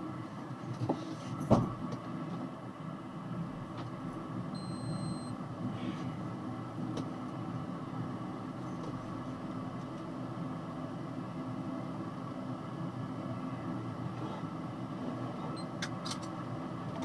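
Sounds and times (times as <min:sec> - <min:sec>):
truck engine and cab noise: 0:03.4 - 0:17.0.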